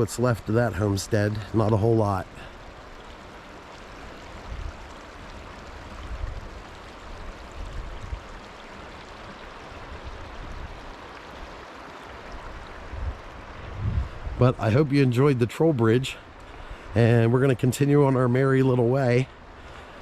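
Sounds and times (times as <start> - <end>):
creek water running: 0.0 - 20.0
low rumbling on microphone: 12.8 - 15.1.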